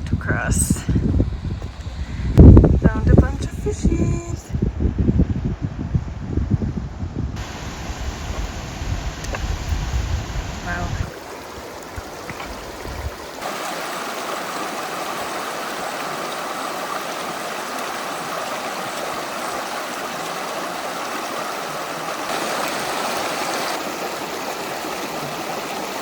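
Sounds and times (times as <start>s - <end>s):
low rumble: 0.0s - 11.1s
creek water rushing: 7.4s - 26.0s.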